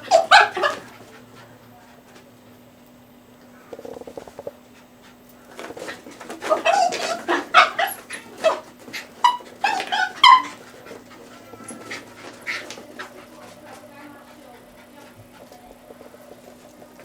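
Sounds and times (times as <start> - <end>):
dog barking and yipping: 0.0 - 1.2, 5.8 - 13.2.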